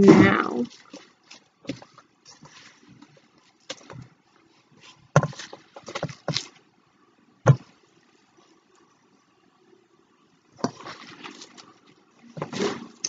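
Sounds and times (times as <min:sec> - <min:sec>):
slime squelching and crackling: 0:00.0 - 0:06.7, 0:10.6 - 0:13.0.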